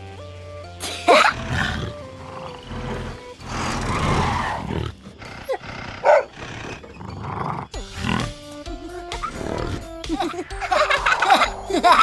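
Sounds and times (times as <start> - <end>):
animal-like roar: 1.3 - 8.4, 9.2 - 10.0.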